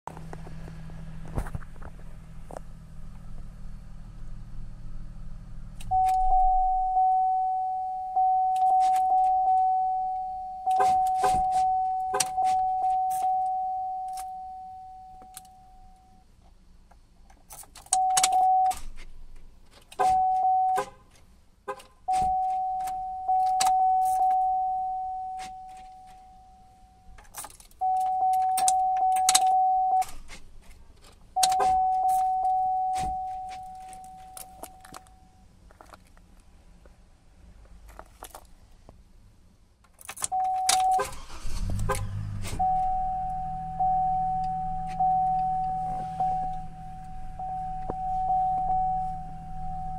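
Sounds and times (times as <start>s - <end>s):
dashboard warning tone: 5.9s - 16.2s, 17.9s - 18.8s, 20.0s - 21.0s, 21.7s - 27.2s, 27.8s - 30.1s, 31.4s - 35.4s, 40.3s - 49.9s
keys jangling and clicking: 27.2s - 30.4s, 33.2s - 36.0s, 39.9s - 41.0s.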